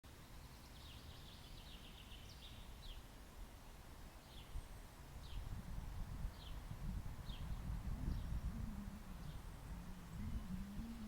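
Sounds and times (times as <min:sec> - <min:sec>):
faint low rumble: 0:04.0 - 0:11.0.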